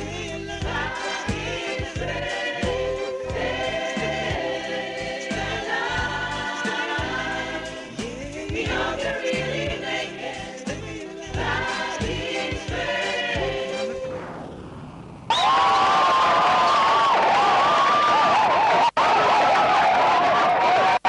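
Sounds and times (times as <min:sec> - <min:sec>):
backing music with a beat: 0:00.0 - 0:14.1
gospel choir singing: 0:00.0 - 0:14.2.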